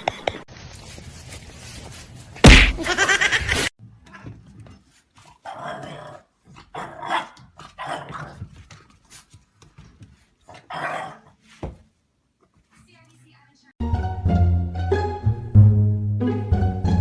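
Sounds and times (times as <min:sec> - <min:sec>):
dog growling and barking: 0:05.4 - 0:08.5, 0:10.5 - 0:11.4.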